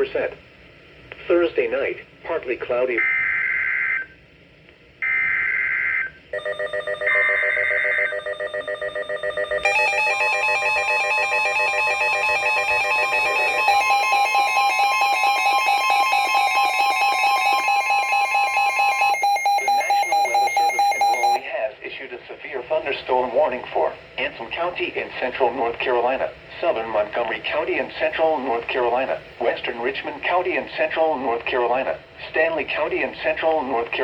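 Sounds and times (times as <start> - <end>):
rapid pulsing alarm beeps: 5.0 - 21.4
steady warning alert tone: 6.4 - 21.4
screeching digital data bursts: 9.7 - 21.4.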